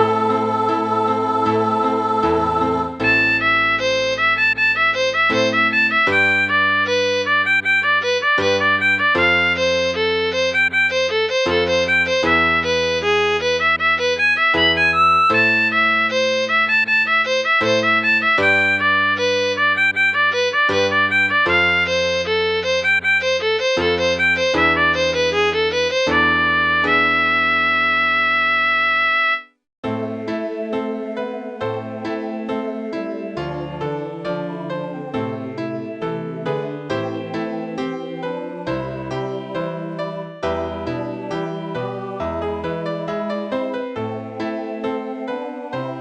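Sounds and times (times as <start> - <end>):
keyboard chords and bass notes: 0.0 - 30.3
violin-like melody: 0.0 - 46.0.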